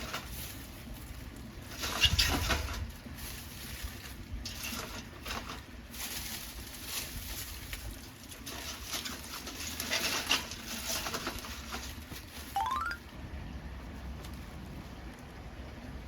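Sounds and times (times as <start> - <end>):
wood crackling and popping in stove: 0.0 - 12.5.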